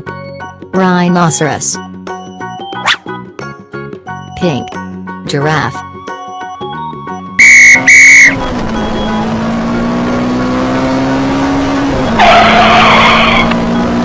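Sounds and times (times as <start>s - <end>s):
tyre screech: 7.4s - 8.4s, 12.0s - 13.6s
cartoon engine hum: 7.4s - 14.0s.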